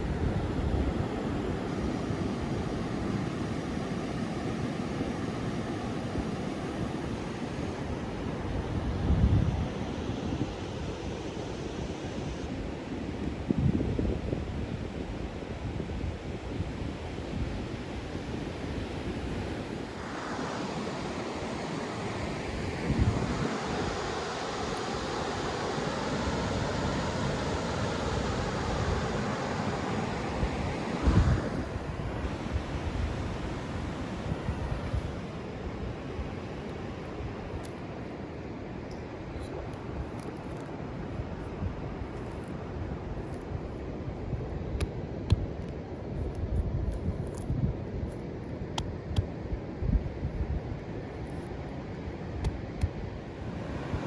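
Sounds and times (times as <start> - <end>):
ocean surf washing: 0.0 - 13.4, 14.3 - 46.3, 47.3 - 54.0
ocean surf rushing: 18.6 - 39.3, 53.1 - 54.0
wind buffeting microphone: 30.0 - 37.6.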